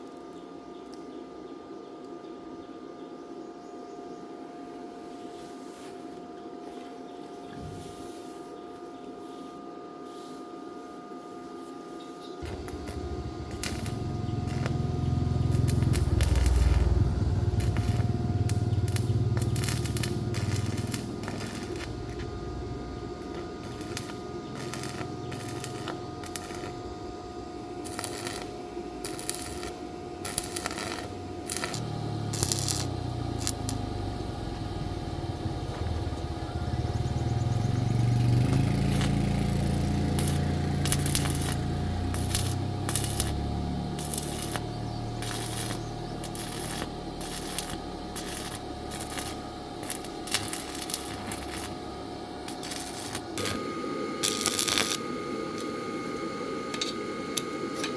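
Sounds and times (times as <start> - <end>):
low rumble: 12.4 - 51.7.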